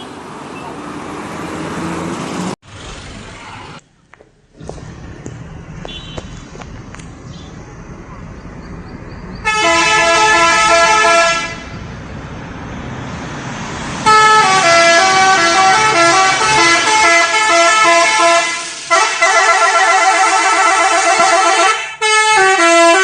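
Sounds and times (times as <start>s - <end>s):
musical air horn: 9.4s - 11.7s, 14.0s - 23.0s.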